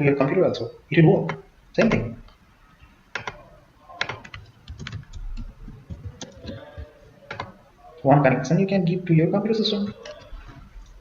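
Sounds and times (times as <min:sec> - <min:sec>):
keyboard and mouse clicking: 0:03.1 - 0:03.4, 0:04.0 - 0:07.6.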